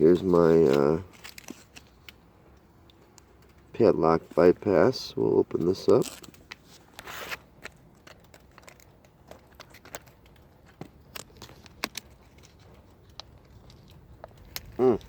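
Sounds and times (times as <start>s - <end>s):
packaging crinkling: 0.4s - 2.2s, 5.7s - 15.0s.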